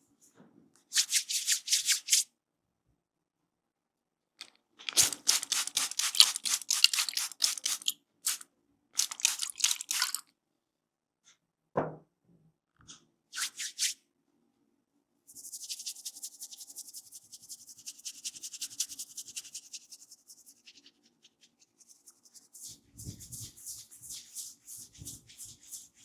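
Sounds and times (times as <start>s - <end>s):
hands rustling through hair: 4.8s - 8.4s, 9.0s - 10.2s.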